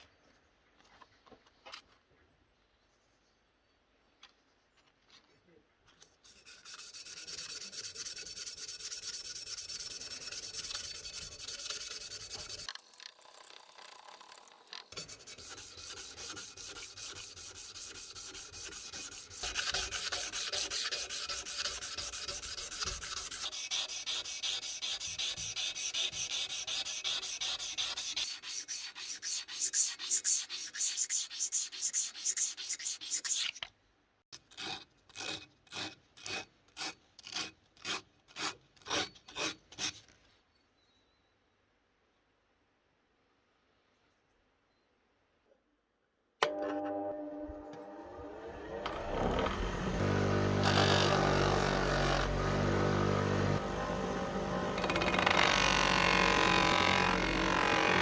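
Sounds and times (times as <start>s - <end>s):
sanding strokes on metal: 6.2s - 12.7s, 15.0s - 33.6s.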